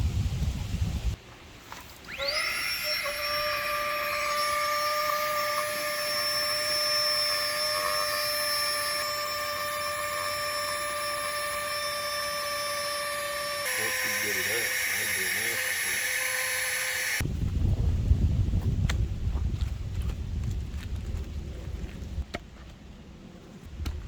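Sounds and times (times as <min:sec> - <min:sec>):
low wind rumble: 0:00.0 - 0:01.2, 0:17.2 - 0:24.0
small electric motor whining: 0:02.1 - 0:17.2.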